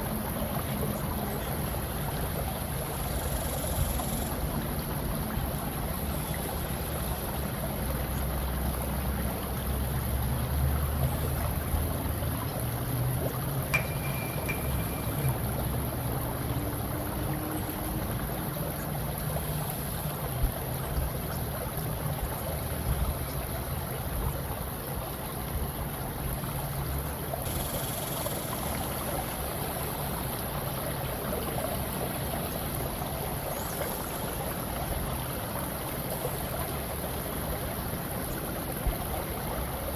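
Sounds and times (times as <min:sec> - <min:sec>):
water rushing: 0:04.4 - 0:22.8.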